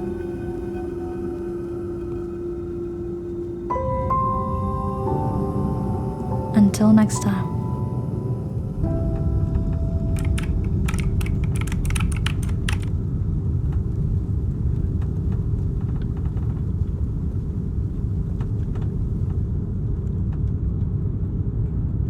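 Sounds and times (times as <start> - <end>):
low rumble: 0.0 - 22.0
sharp clicks: 10.2 - 12.9.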